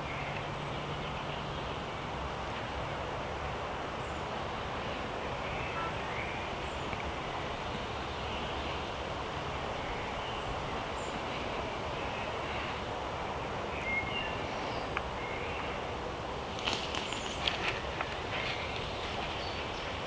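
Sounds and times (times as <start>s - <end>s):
outdoor background noise: 0.0s - 20.0s.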